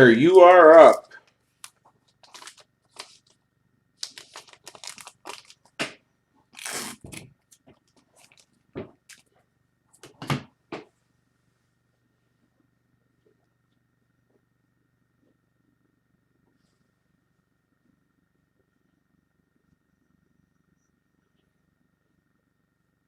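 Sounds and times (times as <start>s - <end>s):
packaging rustle: 1.6s - 3.4s, 4.0s - 5.8s, 6.5s - 9.3s
plastic packaging crinkling: 1.6s - 3.4s, 4.0s - 5.9s, 6.5s - 9.3s.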